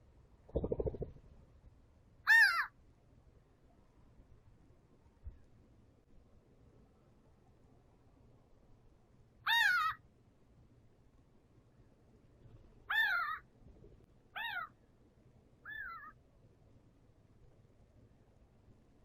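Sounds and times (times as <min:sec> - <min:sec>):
animal calls falling in pitch: 0:00.5 - 0:01.2.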